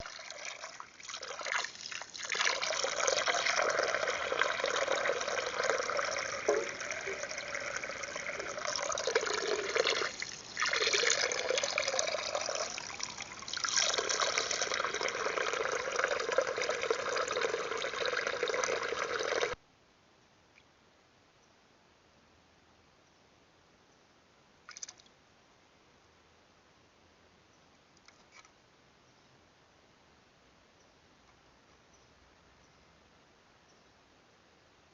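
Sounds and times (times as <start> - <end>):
water splashing and trickling: 0.0 - 19.6.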